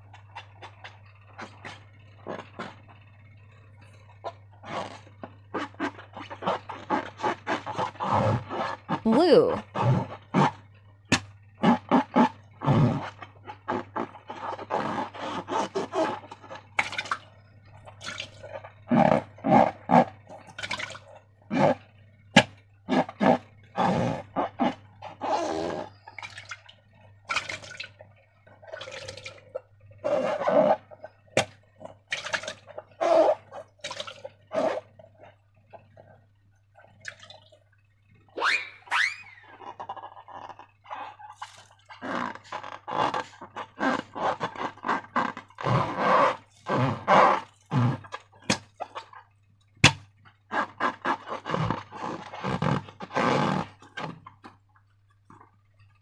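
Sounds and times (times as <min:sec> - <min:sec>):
steady low hum: 0:00.0 - 0:56.0
slime squelching: 0:04.2 - 0:37.6, 0:38.4 - 0:54.6
short rising squeak: 0:38.4 - 0:40.1.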